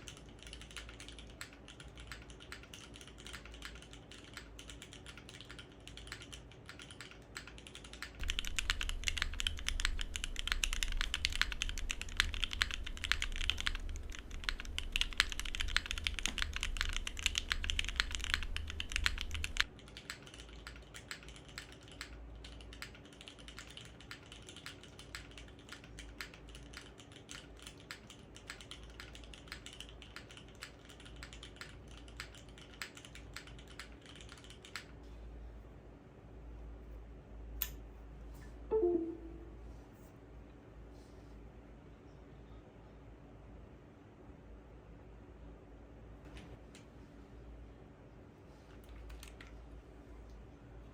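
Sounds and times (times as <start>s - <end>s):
mechanical keyboard typing: 0.0s - 35.0s, 48.8s - 49.6s.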